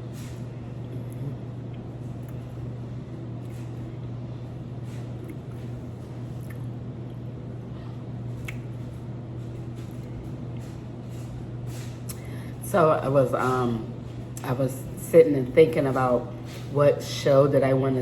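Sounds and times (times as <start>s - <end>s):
steady low hum: 0.0s - 18.0s
chewing food: 0.2s - 3.9s, 4.8s - 7.4s, 8.3s - 9.0s.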